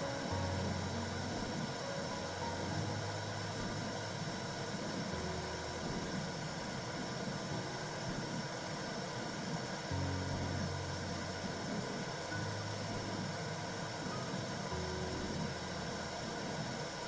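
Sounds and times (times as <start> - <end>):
deep rumble: 0.0 - 8.6
low whooshing noise: 0.0 - 17.0.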